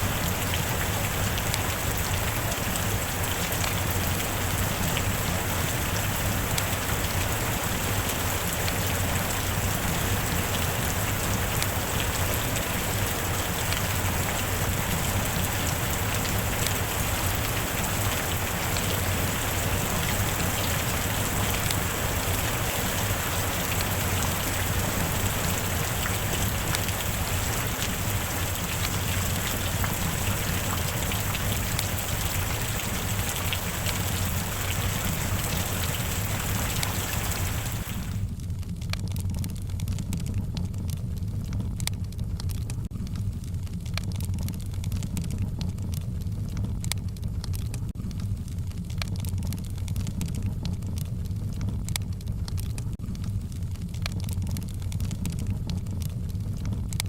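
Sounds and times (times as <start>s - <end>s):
steady rain hiss: 0.0s - 39.2s.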